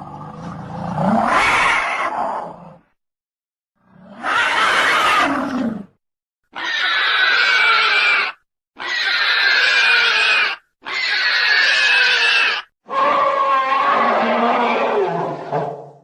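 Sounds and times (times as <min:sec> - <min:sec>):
dinosaur squealing calls: 0:01.2 - 0:02.2, 0:06.5 - 0:15.6.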